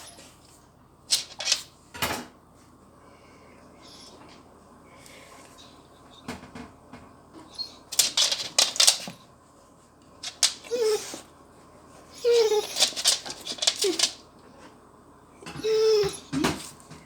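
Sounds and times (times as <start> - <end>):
dog making clicking noises: 1.1 - 1.6, 7.9 - 9.2, 10.2 - 11.2, 12.2 - 14.2
dog whining: 3.8 - 4.4, 7.4 - 9.0, 10.2 - 11.3, 12.1 - 14.2, 15.4 - 16.7.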